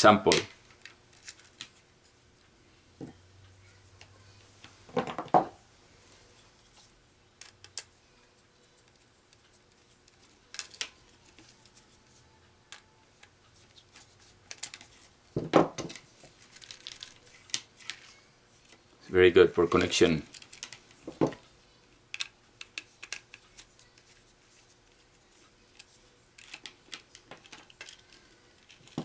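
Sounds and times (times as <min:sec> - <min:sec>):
small metal clicks and clatter: 0:15.8 - 0:18.2, 0:20.3 - 0:20.8, 0:25.7 - 0:29.0.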